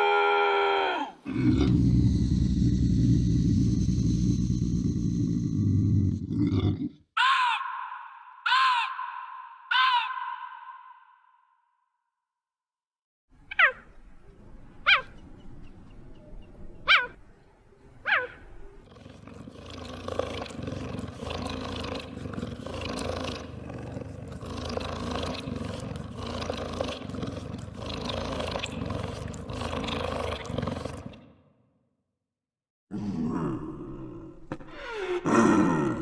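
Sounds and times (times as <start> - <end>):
wild cat calling: 18.0 - 31.2.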